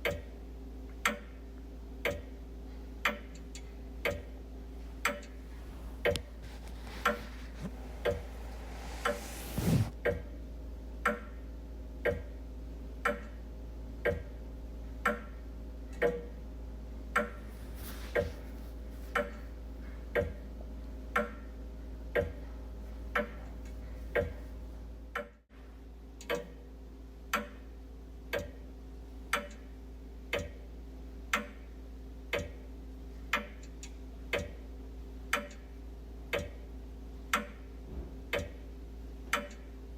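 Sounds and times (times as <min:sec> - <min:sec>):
wall clock ticking: 0:00.0 - 0:00.3, 0:00.9 - 0:01.4, 0:02.0 - 0:02.4, 0:03.0 - 0:06.4, 0:12.0 - 0:12.4, 0:13.0 - 0:13.4, 0:14.0 - 0:14.4, 0:15.0 - 0:15.4, 0:16.0 - 0:16.4, 0:20.1 - 0:20.5, 0:26.2 - 0:26.6, 0:28.3 - 0:28.6, 0:29.3 - 0:29.7, 0:30.3 - 0:30.7, 0:31.3 - 0:31.7, 0:32.3 - 0:34.7, 0:35.3 - 0:35.7, 0:36.3 - 0:36.7, 0:37.3 - 0:37.7, 0:38.3 - 0:38.6, 0:39.3 - 0:39.7
faint steady hum: 0:00.0 - 0:37.8
brief swishing noise: 0:05.5 - 0:10.0.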